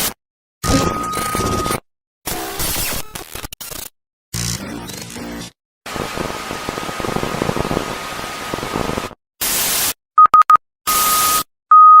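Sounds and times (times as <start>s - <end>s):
loud beep: 0.6s - 1.8s, 10.2s - 12.0s
quick beeps: 0.6s - 1.8s, 10.2s - 12.0s
static hiss: 5.9s - 9.6s.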